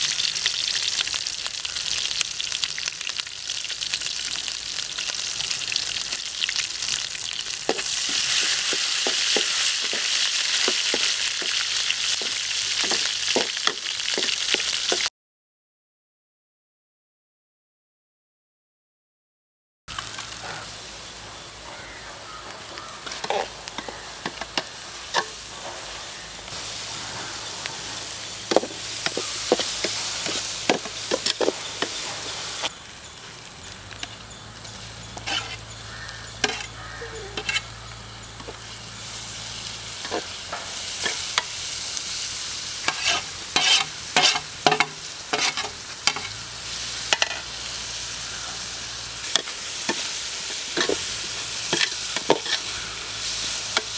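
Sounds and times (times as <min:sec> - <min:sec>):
food sizzling in a pan: 0:00.0 - 0:15.1, 0:19.9 - 0:53.9
spoon scraping a pan: 0:07.6 - 0:15.1, 0:23.0 - 0:26.0, 0:26.8 - 0:32.7, 0:35.2 - 0:37.8, 0:40.0 - 0:41.6, 0:42.8 - 0:46.4, 0:47.1 - 0:47.6, 0:49.2 - 0:53.9.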